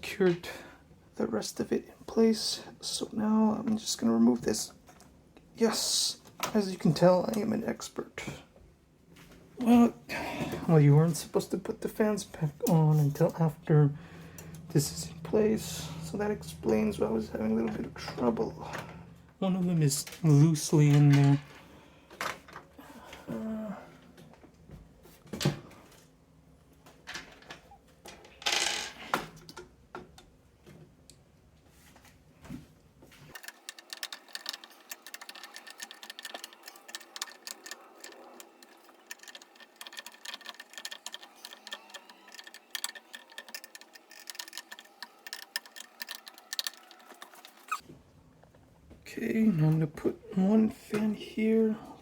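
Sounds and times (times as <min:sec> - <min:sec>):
clicks and rattles of plastic parts: 0:33.2 - 0:47.8
rapid light clicking: 0:33.3 - 0:47.8.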